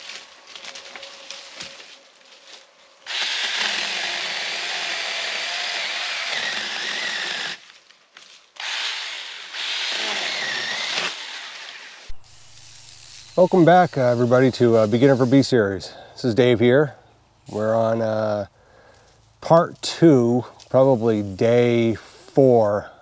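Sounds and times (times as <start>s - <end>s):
chainsaw running: 3.1s - 7.6s, 8.6s - 15.5s.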